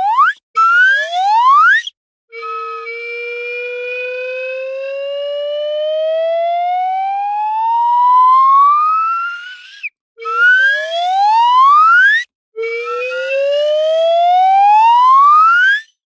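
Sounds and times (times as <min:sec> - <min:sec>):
slide whistle upward slide: 0:00.0 - 0:04.1, 0:07.8 - 0:16.0.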